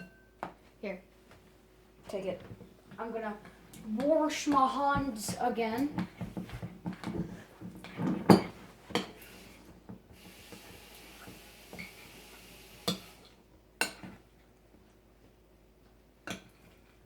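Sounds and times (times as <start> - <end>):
steady hiss: 9.1 - 13.4.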